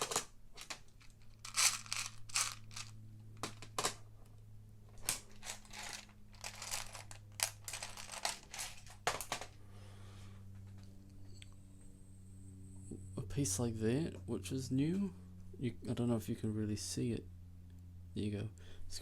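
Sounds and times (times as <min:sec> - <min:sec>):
plastic bag crinkling: 0:00.0 - 0:03.9, 0:05.0 - 0:09.4
faint low hum: 0:00.0 - 0:19.0.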